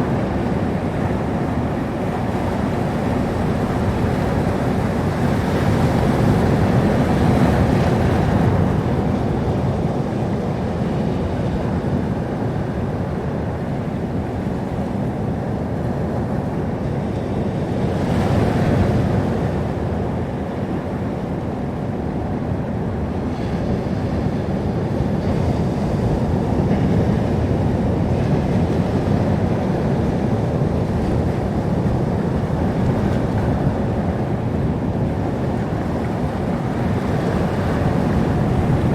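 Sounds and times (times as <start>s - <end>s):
waves washing onto shore: 0.0s - 38.9s.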